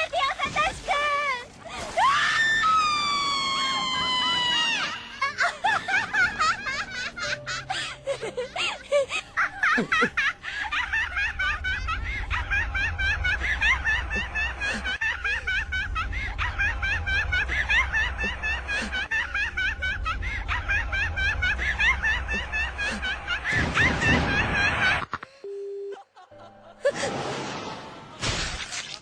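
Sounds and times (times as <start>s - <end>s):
many people laughing: 3.5s - 25.1s, 26.0s - 27.2s.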